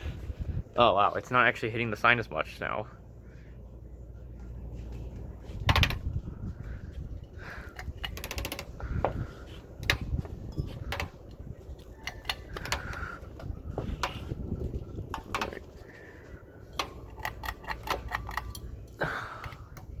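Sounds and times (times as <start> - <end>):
ceiling fan rumble: 0.0 - 20.0
fan blades tapping a sign: 5.4 - 18.8.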